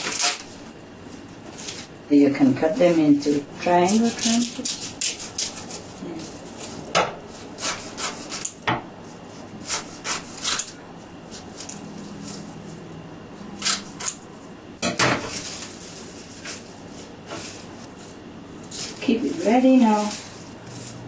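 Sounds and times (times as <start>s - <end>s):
scissors snipping seaweed sheets: 3.6s - 5.6s.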